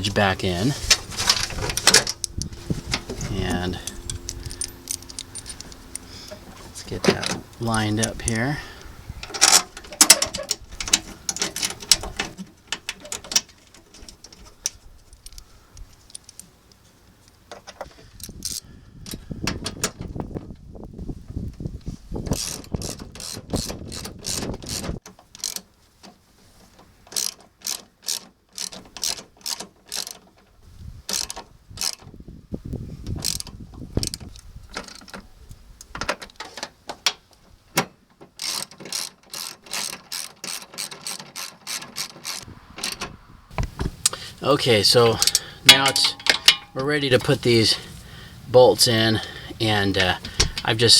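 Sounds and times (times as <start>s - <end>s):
parts knocking: 36.0s - 50.9s
ratchet wrench clicking: 45.0s - 46.7s.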